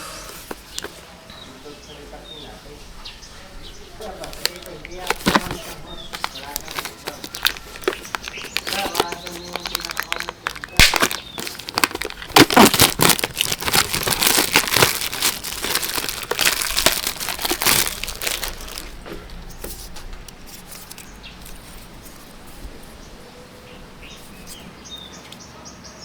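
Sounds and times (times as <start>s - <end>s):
packaging crinkling and rustling: 0.2s - 1.1s, 4.0s - 23.0s.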